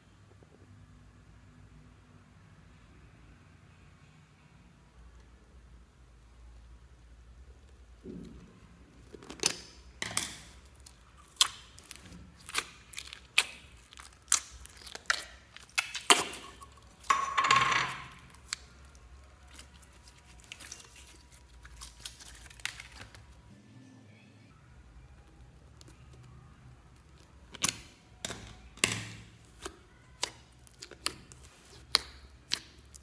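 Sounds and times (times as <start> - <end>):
slime crackling: 7.6 - 17.2, 17.9 - 23.5, 25.3 - 33.0
slime clicking and tapping: 27.4 - 33.0.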